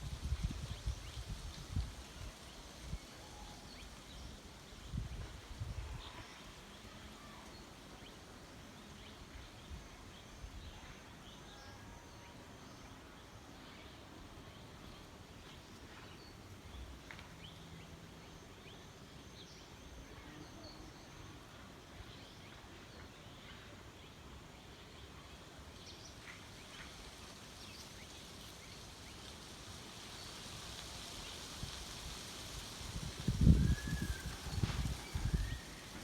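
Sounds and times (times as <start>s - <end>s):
hiss: 26.4s - 36.0s.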